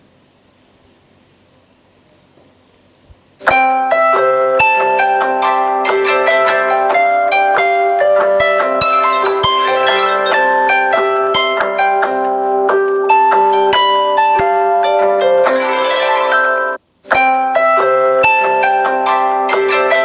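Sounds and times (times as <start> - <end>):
phone ringtone melody: 8.8 - 11.1.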